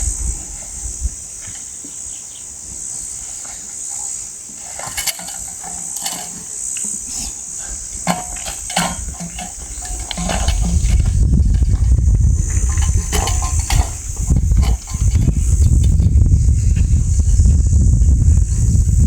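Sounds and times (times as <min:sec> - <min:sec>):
insects chirring: 0:00.0 - 0:19.0
sharp clicks and knocks: 0:04.8 - 0:07.3, 0:08.0 - 0:16.2.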